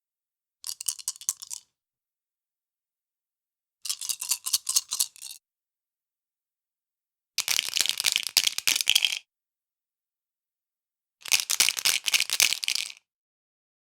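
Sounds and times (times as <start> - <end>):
dice rattling: 0.7 - 1.6, 7.4 - 9.2, 11.3 - 13.0.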